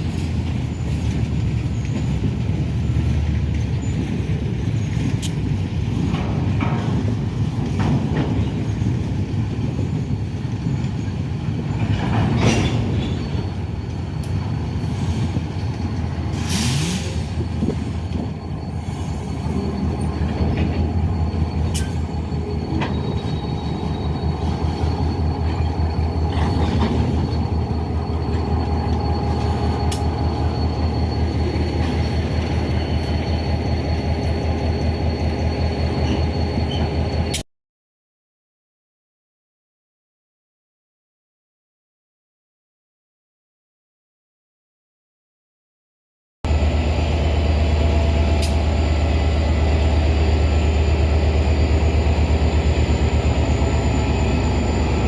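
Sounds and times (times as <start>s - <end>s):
freight train wheels rumbling: 0.0s - 37.4s, 46.5s - 55.0s
train clanks: 0.0s - 37.4s, 46.5s - 55.0s
high wheel squeal: 16.3s - 37.4s, 46.5s - 55.0s.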